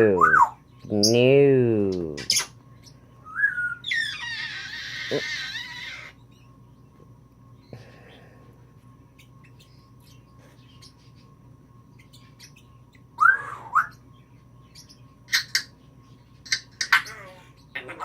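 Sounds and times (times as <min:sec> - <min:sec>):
parrot squeak: 0:03.5 - 0:06.2
parrot squawks: 0:03.8 - 0:06.2, 0:16.8 - 0:18.0.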